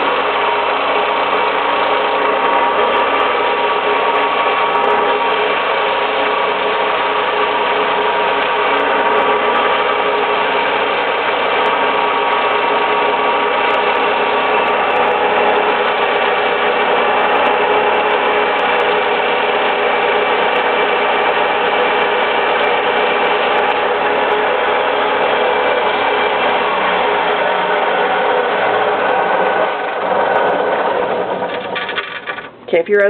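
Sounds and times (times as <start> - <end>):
band saw whirring: 0.0 - 32.7.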